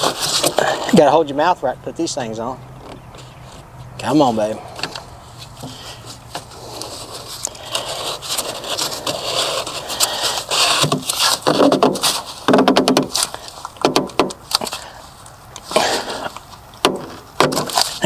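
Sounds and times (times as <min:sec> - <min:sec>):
filter scraping on housing: 0:00.0 - 0:01.0, 0:02.8 - 0:18.0
sharp clicks and knocks: 0:10.0 - 0:14.8, 0:15.6 - 0:18.0.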